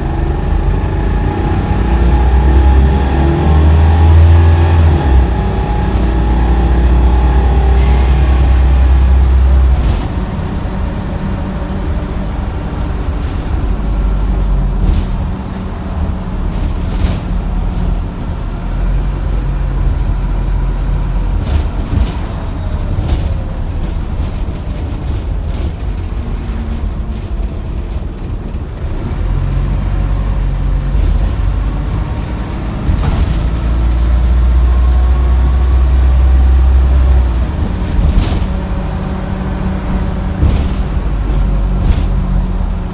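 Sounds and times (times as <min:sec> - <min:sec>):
bus engine droning: 0:00.0 - 0:42.9
knocks and rattles: 0:13.0 - 0:42.9.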